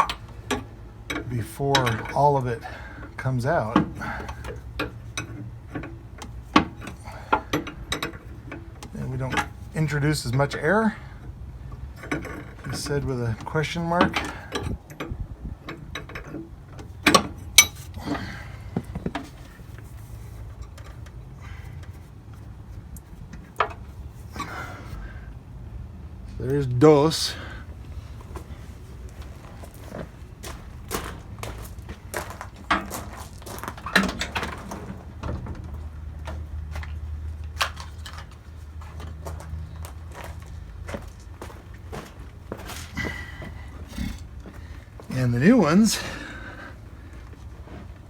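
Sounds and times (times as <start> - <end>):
clicks and knocks of handled tools: 35.7 - 40.4
low steady hum: 39.7 - 48.0.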